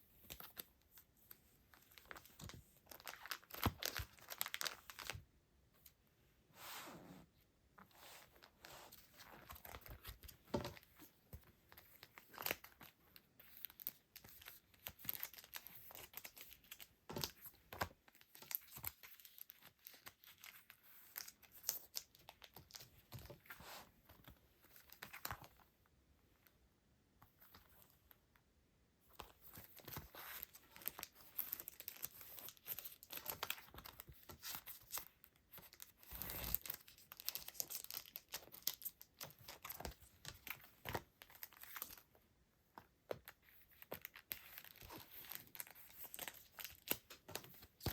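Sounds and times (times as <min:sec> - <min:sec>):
plastic and paper packaging crinkling: 0:01.7 - 0:05.2, 0:29.3 - 0:42.1, 0:43.2 - 0:47.9.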